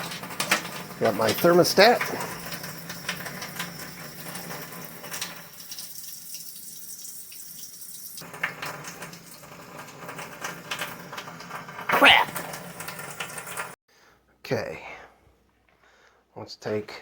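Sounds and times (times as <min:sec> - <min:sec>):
tap water running: 0:00.0 - 0:13.8.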